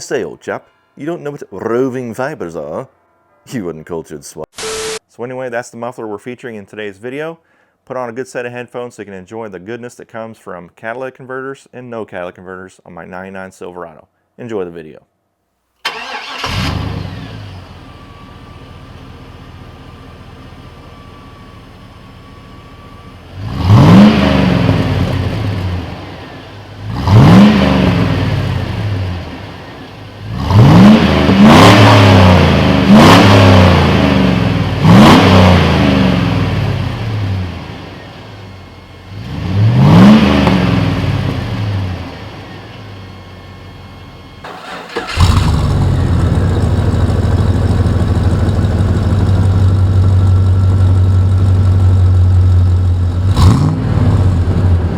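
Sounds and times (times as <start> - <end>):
truck engine revving: 23.4 - 42.6, 44.5 - 54.9
loud steady exhaust drone: 24.5 - 44.5, 45.2 - 54.9.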